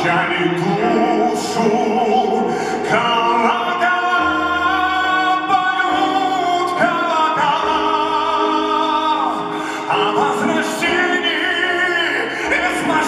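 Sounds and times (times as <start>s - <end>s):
slow song with sung melody: 0.0s - 13.0s.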